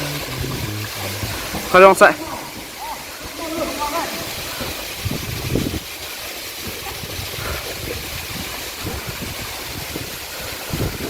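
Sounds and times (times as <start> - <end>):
low rumble on microphone: 0.0 - 1.7
waterfall roaring: 0.0 - 4.9.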